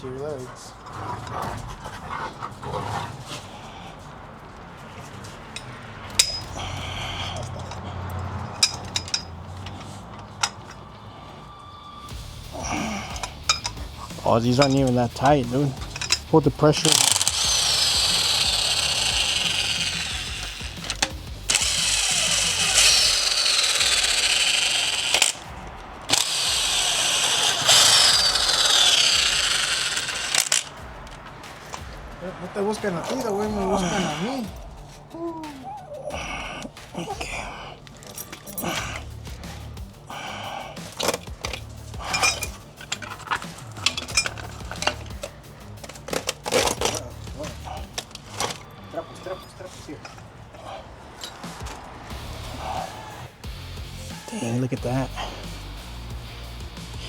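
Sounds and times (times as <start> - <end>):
power tool whining: 4.4 - 34.7.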